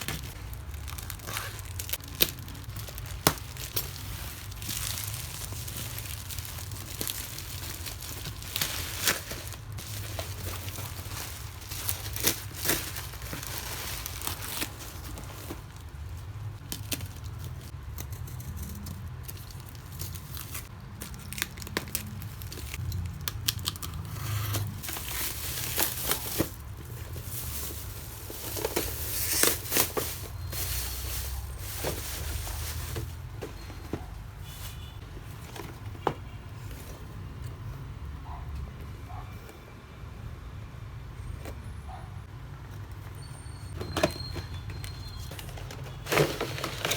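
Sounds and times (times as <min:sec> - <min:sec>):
packaging crinkling and tearing: 0:00.0 - 0:33.1, 0:45.2 - 0:46.9.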